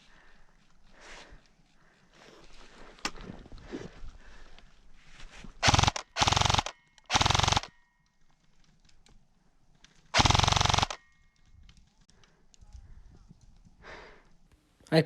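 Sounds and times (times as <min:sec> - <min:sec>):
airsoft rifle full-auto bursts: 0:05.6 - 0:07.8, 0:10.2 - 0:11.1.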